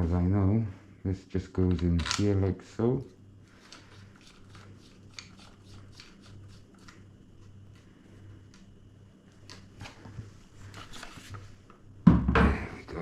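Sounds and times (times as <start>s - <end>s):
low steady hum: 0.0s - 13.0s
crossbow parts clicking and scraping: 1.7s - 2.3s.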